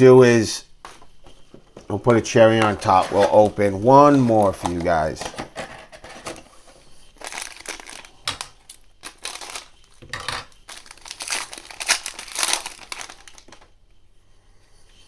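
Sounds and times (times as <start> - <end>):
wrapper tearing and crinkling: 2.6 - 6.5, 7.1 - 13.8.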